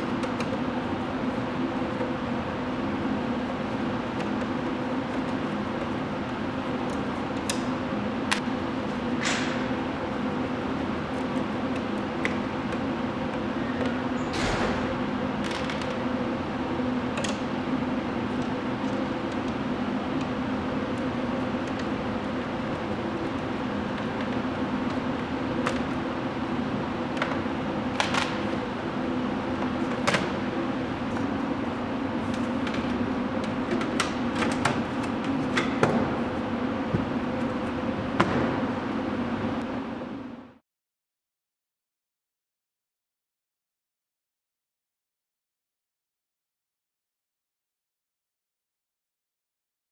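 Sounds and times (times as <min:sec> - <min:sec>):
steady low hum: 0:08.4 - 0:40.5.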